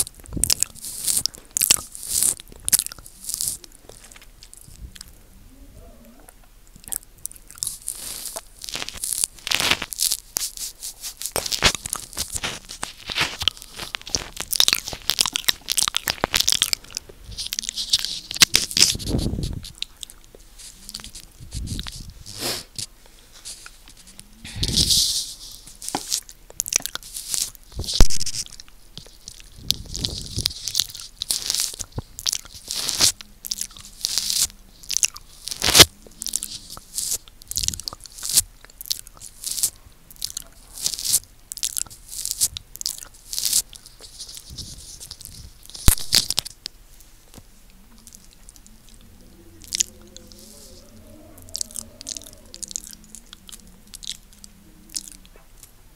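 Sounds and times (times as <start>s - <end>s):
licking and lip smacking: 0.0s - 5.2s, 6.1s - 55.9s
wet slurps: 48.0s - 55.8s.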